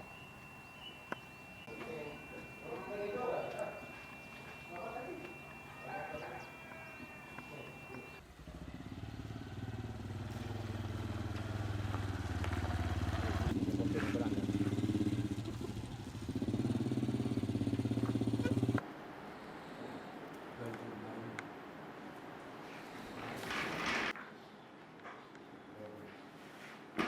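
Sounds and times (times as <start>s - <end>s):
small engine running: 0.0s - 18.8s.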